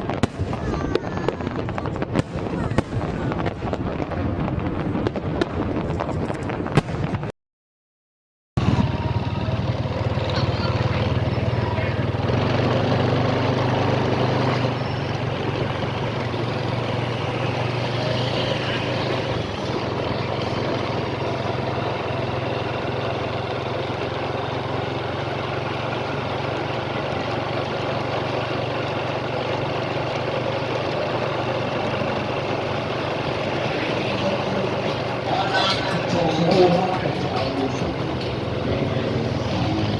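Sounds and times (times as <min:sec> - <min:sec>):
engines rumbling: 0:00.0 - 0:07.0, 0:08.6 - 0:39.9
outdoor noise: 0:00.0 - 0:07.3, 0:08.6 - 0:39.9.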